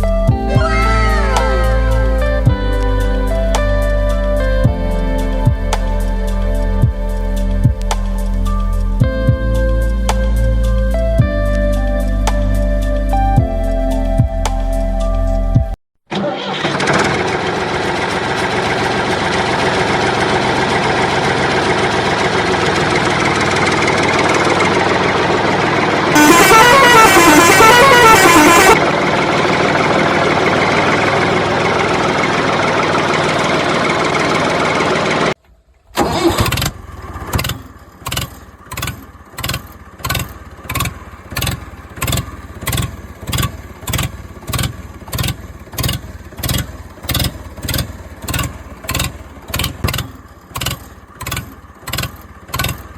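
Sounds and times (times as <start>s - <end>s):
vehicle engine running: 0.0s - 52.9s
even pulsing beat: 0.3s - 4.0s, 4.6s - 11.7s, 13.4s - 14.8s
warbling horn: 0.4s - 2.8s, 26.1s - 28.9s.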